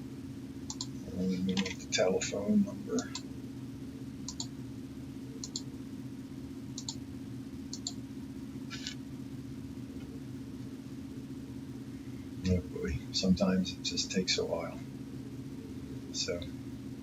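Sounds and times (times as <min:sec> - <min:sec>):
steady low hum: 0:00.0 - 0:17.0
mouse buttons clicking: 0:05.4 - 0:05.7.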